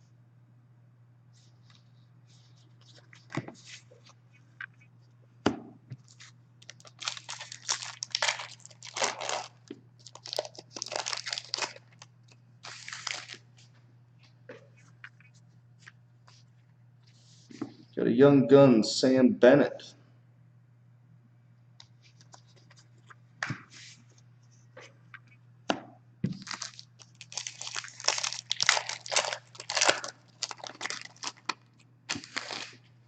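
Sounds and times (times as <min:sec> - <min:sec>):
wrapper crinkling and tearing: 0:06.1 - 0:13.4, 0:26.4 - 0:32.9.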